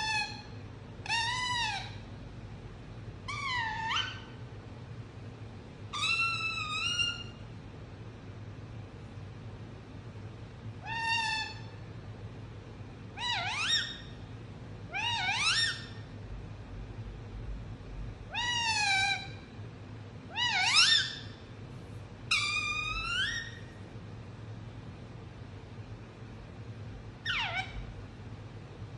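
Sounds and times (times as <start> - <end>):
parakeet calling: 0.0 - 2.0, 3.3 - 4.4, 5.9 - 7.4, 10.8 - 11.8, 13.2 - 14.3, 14.9 - 16.1, 18.3 - 19.6, 20.3 - 21.5, 22.3 - 23.8, 27.2 - 28.0.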